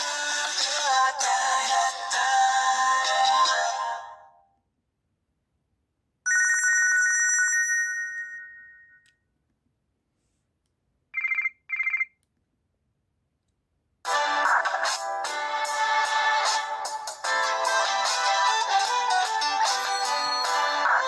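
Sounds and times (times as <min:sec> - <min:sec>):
trilling bell-like ringtone: 0:06.3 - 0:09.1, 0:19.7 - 0:20.9
musical ringtone: 0:17.3 - 0:21.0.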